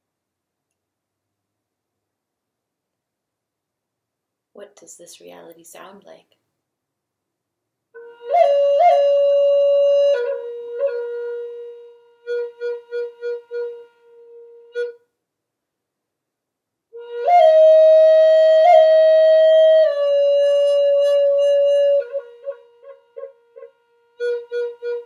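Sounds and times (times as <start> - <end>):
flute-like slow melody: 8.0 - 15.1, 16.9 - 25.0.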